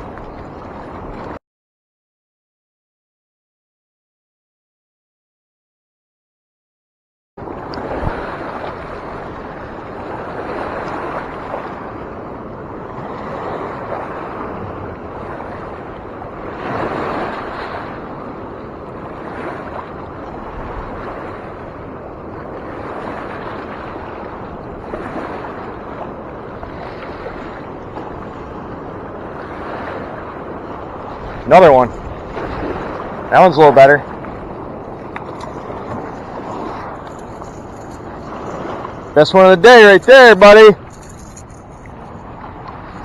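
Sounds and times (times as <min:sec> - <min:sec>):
wind buffeting microphone: 0:00.0 - 0:01.4, 0:07.4 - 0:43.0
river water rushing: 0:24.8 - 0:43.0.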